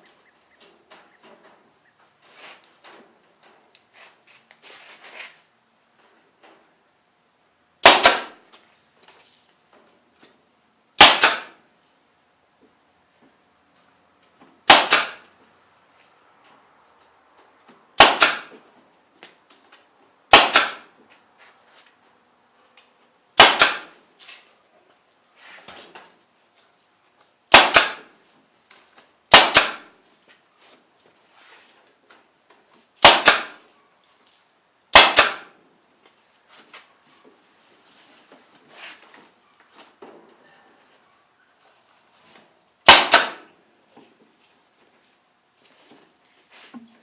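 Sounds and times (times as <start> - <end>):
staple gun firing: 7.8 - 8.4, 11.0 - 11.6, 14.7 - 15.2, 18.0 - 18.5, 20.3 - 20.8, 23.4 - 24.0, 27.5 - 28.1, 29.3 - 29.9, 33.0 - 33.6, 34.9 - 35.5, 42.9 - 43.5.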